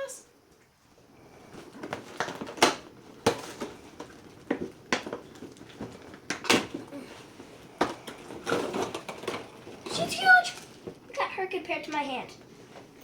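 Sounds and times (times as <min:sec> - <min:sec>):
plastic and cardboard packaging crinkling: 0:01.4 - 0:11.3.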